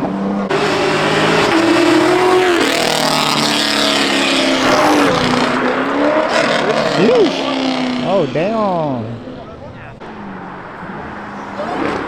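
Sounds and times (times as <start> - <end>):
exhaust and road noise: 0.0 - 12.0
car engine revving: 0.5 - 7.0.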